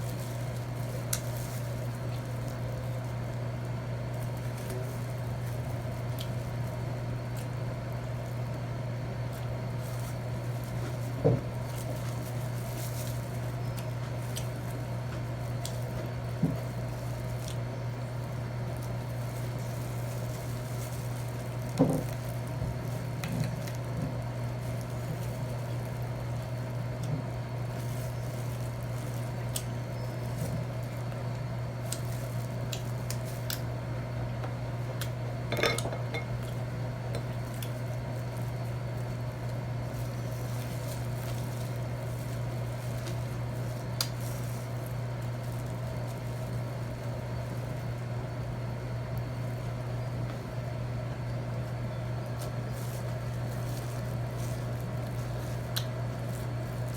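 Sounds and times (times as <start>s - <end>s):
wet chewing: 18.8s - 33.7s.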